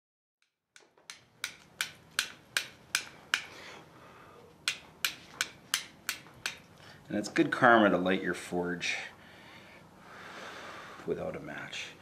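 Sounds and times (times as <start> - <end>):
hammer striking iron on anvil: 0.8 - 3.5, 4.6 - 6.6.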